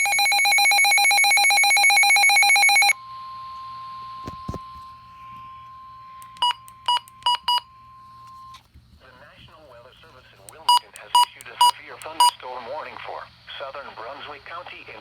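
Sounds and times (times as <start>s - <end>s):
pulsing electronic alarm beep: 0.0s - 3.0s.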